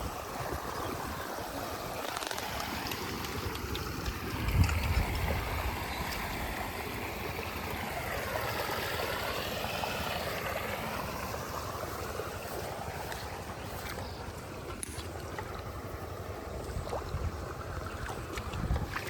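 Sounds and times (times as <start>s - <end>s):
running water rushing: 0.0s - 19.0s.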